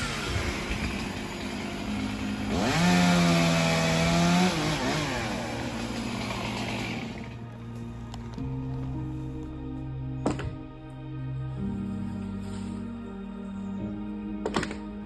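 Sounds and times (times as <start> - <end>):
chainsaw engine revving: 0.0 - 7.6.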